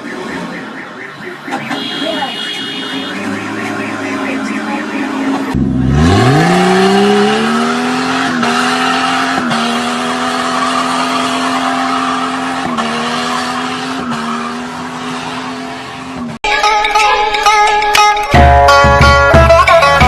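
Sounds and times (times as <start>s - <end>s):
vehicle engine revving: 2.9s - 16.4s.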